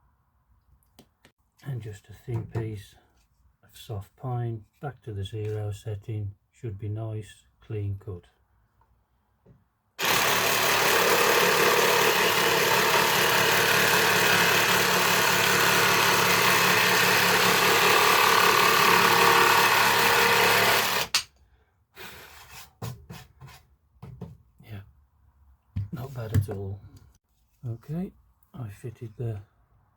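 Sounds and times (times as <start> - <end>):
jigsaw sawing through wood: 10.0 - 21.2.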